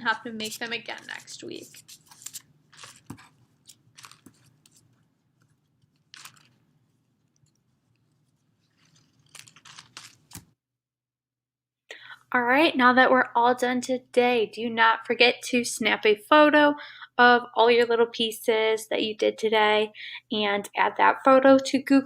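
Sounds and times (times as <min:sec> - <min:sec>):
plastic bag crinkling: 0:00.4 - 0:05.0, 0:05.6 - 0:10.6
paper rustling: 0:00.4 - 0:10.6.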